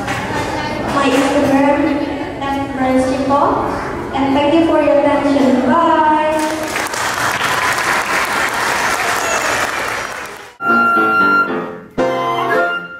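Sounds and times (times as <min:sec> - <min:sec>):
audience applauding: 0:06.4 - 0:10.6
instrumental music with held notes: 0:10.6 - 0:12.9.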